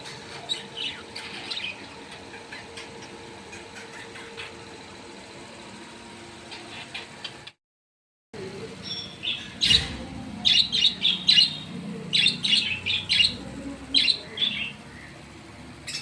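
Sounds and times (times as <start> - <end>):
budgerigars chirping: 0.0 - 4.6, 8.8 - 15.2.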